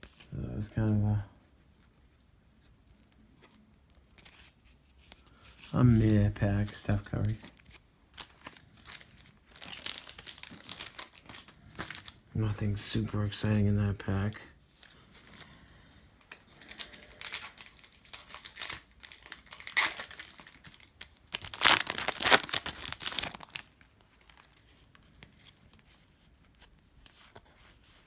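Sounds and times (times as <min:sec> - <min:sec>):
foil wrapper tearing and crinkling: 0:08.2 - 0:12.2, 0:16.2 - 0:24.6
cards being handled: 0:21.4 - 0:28.0.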